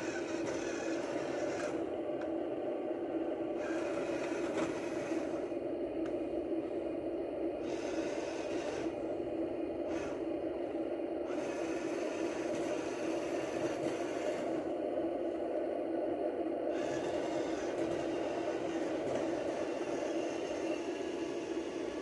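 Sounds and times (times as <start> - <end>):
toy electric motors whirring: 0.0 - 1.9, 3.6 - 5.5, 7.6 - 9.0, 9.9 - 10.2, 11.3 - 14.7, 16.7 - 22.0
high bright motor whine: 0.0 - 22.0.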